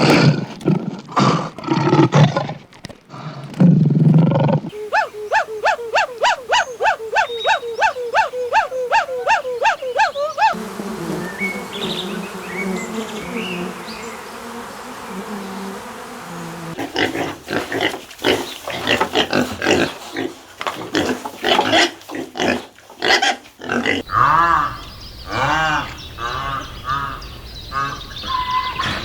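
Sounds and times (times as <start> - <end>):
rough grunting: 0.0 - 4.7
rising and falling animal calls: 4.2 - 16.8
high chirps: 4.7 - 14.3.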